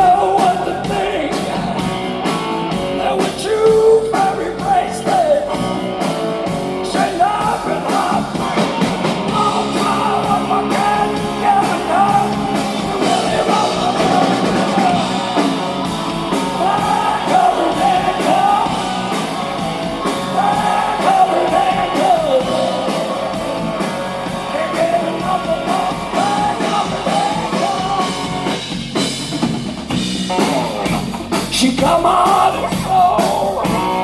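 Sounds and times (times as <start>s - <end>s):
blues-rock band playing: 0.0s - 34.0s
bending lead melody: 8.3s - 31.5s.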